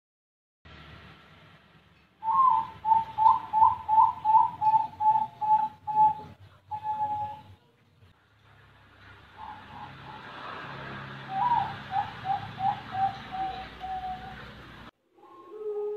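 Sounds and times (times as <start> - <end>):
dove cooing: 2.2 - 7.6, 9.4 - 10.4, 11.2 - 15.9.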